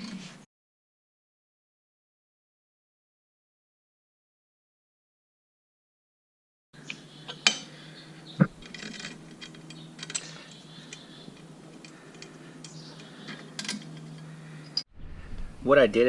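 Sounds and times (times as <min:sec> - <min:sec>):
metal parts clinking on engine: 0:06.8 - 0:14.8
low steady hum: 0:06.8 - 0:16.0.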